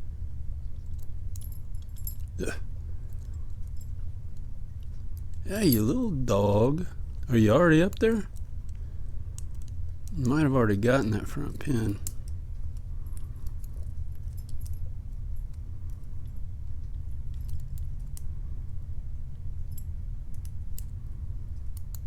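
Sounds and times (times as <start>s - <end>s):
low hum: 0.0s - 21.9s.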